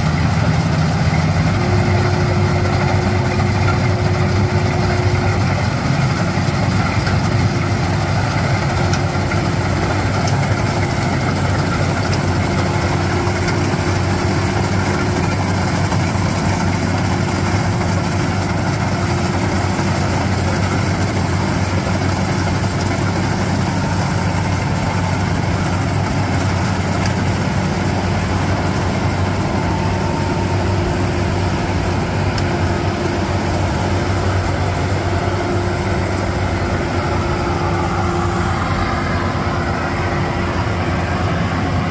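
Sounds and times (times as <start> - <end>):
combine harvester running: 0.0 - 41.9
high thin whine: 4.3 - 41.9.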